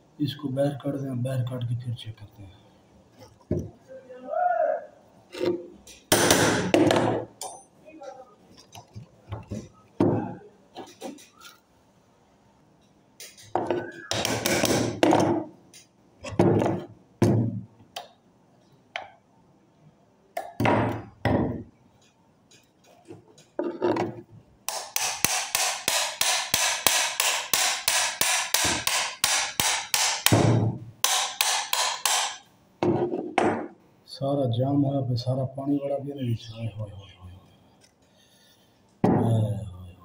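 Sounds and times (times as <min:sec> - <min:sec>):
hammer striking metal: 0:24.7 - 0:32.5.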